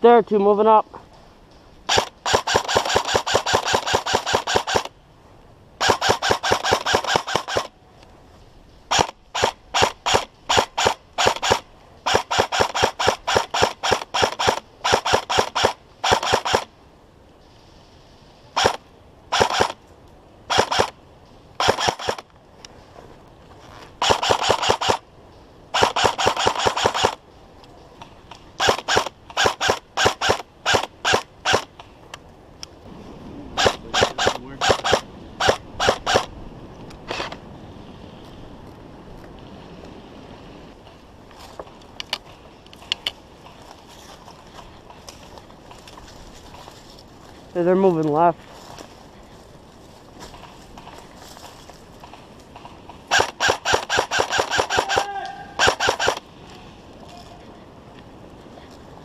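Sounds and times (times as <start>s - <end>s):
airsoft rifle firing: 1.9s - 5.0s, 5.8s - 7.7s, 8.9s - 16.7s, 18.6s - 19.8s, 20.5s - 21.0s, 21.6s - 22.2s, 24.0s - 25.0s, 25.7s - 27.2s, 28.6s - 31.7s, 33.6s - 36.3s, 52.0s - 56.2s.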